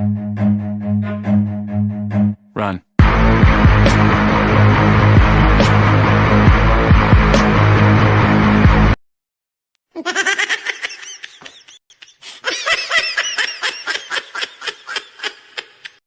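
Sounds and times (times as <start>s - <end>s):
high-pitched giggling laughter: 9.9s - 16.0s.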